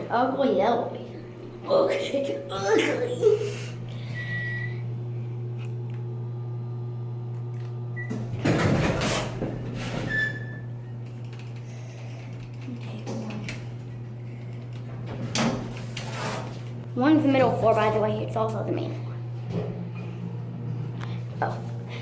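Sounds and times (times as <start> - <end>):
steady low hum: 0.0 - 22.0
elevator doors sliding: 8.0 - 16.8.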